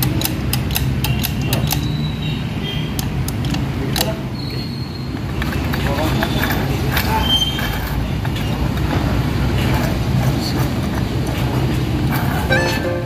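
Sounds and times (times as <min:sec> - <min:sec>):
faint squeaks and clicks: 0:01.0 - 0:03.1, 0:04.0 - 0:08.7
music: 0:12.5 - 0:13.0.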